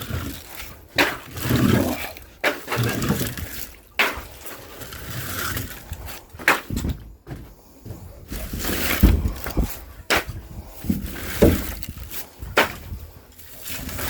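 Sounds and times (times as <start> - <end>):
wood rustling and scraping: 0.0 - 14.0
wood landing knocks: 6.4 - 13.0.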